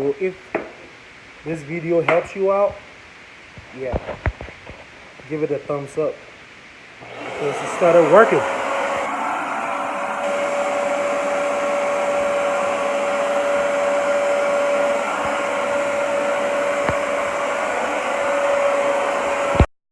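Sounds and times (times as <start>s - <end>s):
carpet cleaner suction motor whine: 7.0s - 19.7s.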